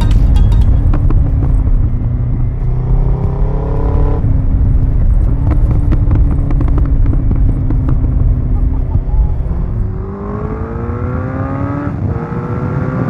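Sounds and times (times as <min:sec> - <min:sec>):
exhaust pops and crackles: 0:00.0 - 0:10.0
motorcycle engine revving: 0:00.0 - 0:13.0.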